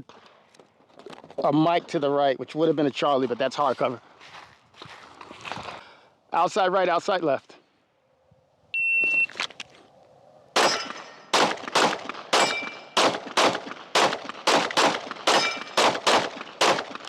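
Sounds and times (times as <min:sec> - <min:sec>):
shot timer beep: 0:08.8 - 0:09.3
bullets ringing on steel: 0:10.6 - 0:11.3, 0:12.3 - 0:13.1, 0:15.3 - 0:16.0
rapid pistol shots: 0:10.6 - 0:17.0.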